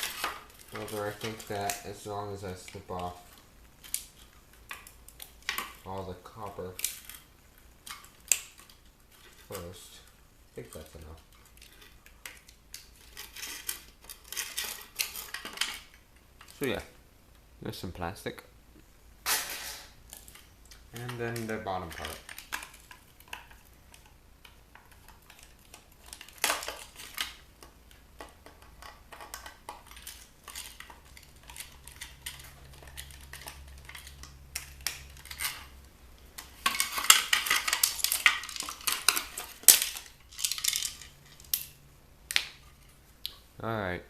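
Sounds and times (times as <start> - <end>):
plastic and metal parts clattering: 0.0 - 9.9, 10.6 - 16.8, 19.3 - 41.7.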